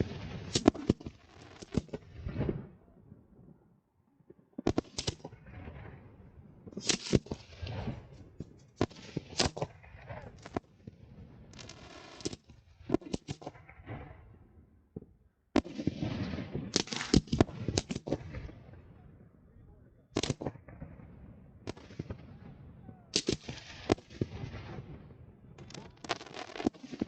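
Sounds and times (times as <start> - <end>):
fireworks banging: 0.0 - 2.8, 6.6 - 14.2, 14.9 - 19.0, 20.1 - 27.0.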